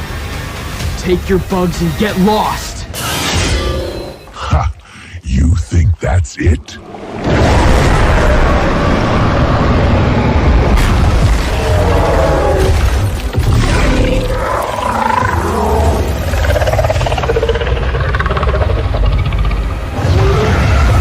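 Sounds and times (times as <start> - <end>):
dramatic film score: 0.0 - 21.0
heavy low booms: 4.6 - 21.0
creature roar: 11.3 - 13.0, 13.6 - 21.0.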